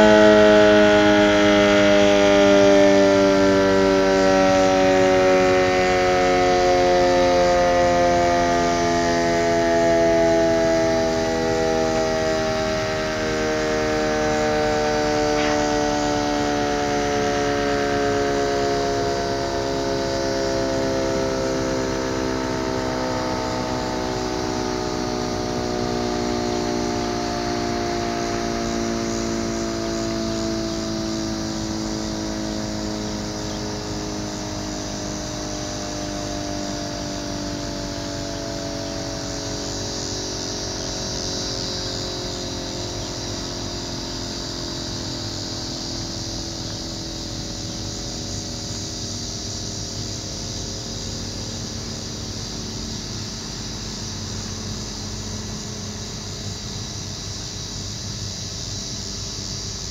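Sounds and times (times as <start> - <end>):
two-tone warning siren winding down: 0.0 - 59.9.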